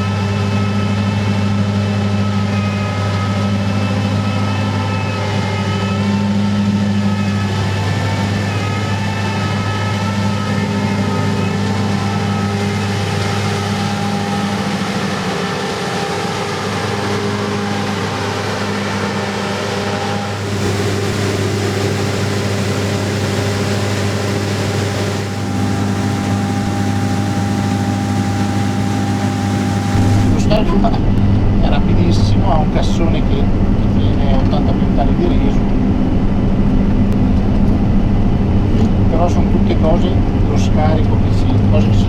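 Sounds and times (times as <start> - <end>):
combine harvester engine drone: 0.0 - 42.0.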